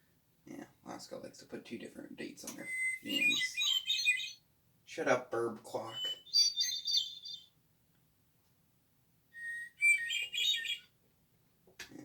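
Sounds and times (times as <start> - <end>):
clock chiming with bird song: 2.6 - 4.4, 5.8 - 7.5, 9.4 - 10.9.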